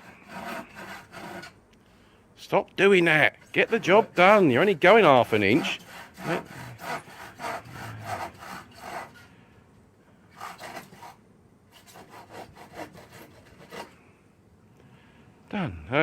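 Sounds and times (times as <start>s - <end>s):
hand saw cutting wood: 0.0s - 1.6s, 3.1s - 9.3s, 10.3s - 14.0s.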